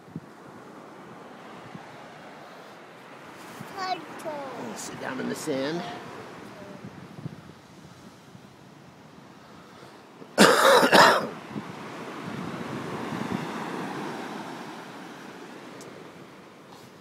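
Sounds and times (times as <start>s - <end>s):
ocean surf washing in: 0.0s - 17.0s
person coughing: 10.4s - 11.3s.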